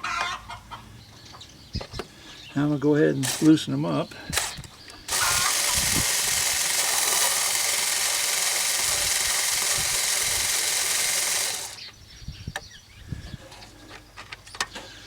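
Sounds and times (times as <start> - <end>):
cordless screwdriver running: 3.2 - 3.5, 4.3 - 11.8.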